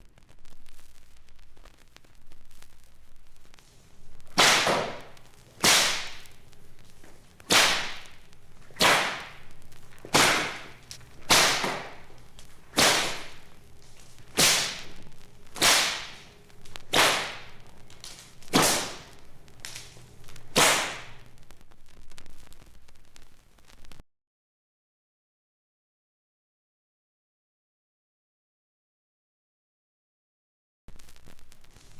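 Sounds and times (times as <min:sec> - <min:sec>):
sharp swishing cracks: 0:04.3 - 0:06.6, 0:07.4 - 0:21.2.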